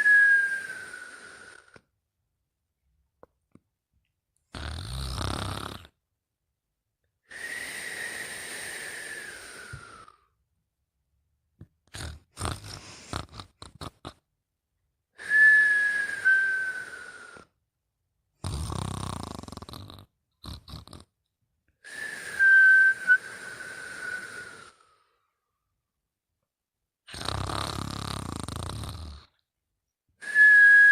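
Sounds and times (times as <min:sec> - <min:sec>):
person snoring: 0:00.0 - 0:01.8, 0:04.5 - 0:06.0, 0:07.3 - 0:10.3, 0:11.9 - 0:14.2, 0:18.4 - 0:21.1, 0:21.9 - 0:25.1, 0:27.1 - 0:29.4
whistling breaths: 0:00.0 - 0:01.8, 0:07.2 - 0:10.4, 0:15.2 - 0:17.6, 0:21.8 - 0:25.3, 0:30.2 - 0:30.9.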